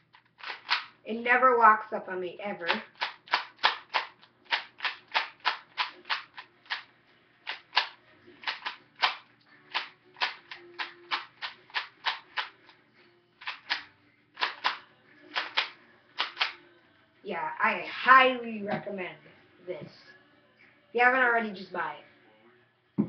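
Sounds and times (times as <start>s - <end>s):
plastic cube clicking: 0.1s - 0.9s, 2.7s - 6.9s, 7.5s - 12.6s, 13.4s - 13.8s, 14.4s - 16.6s.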